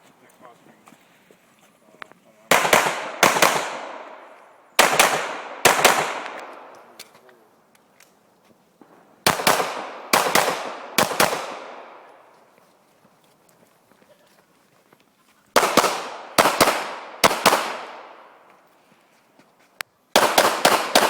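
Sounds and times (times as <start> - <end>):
pistol shots echoing: 2.5 - 6.9, 8.9 - 12.1, 15.6 - 18.4, 20.2 - 21.0.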